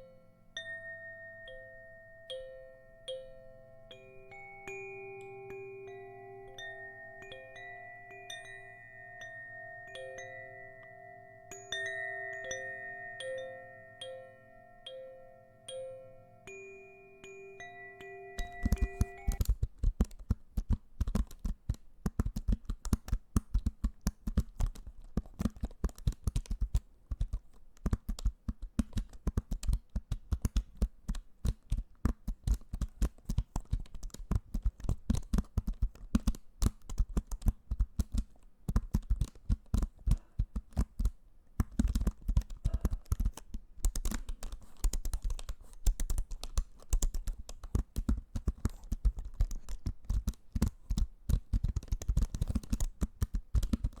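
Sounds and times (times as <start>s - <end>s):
rapid tapping and clicking: 18.4s - 54.0s.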